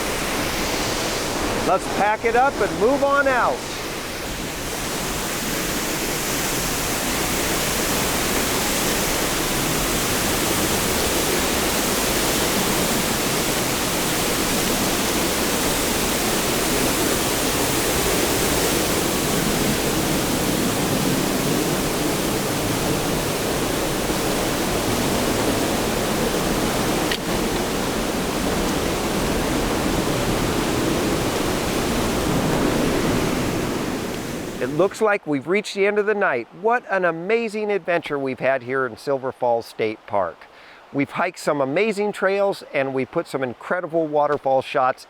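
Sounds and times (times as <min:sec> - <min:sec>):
waterfall pouring: 0:00.0 - 0:35.1.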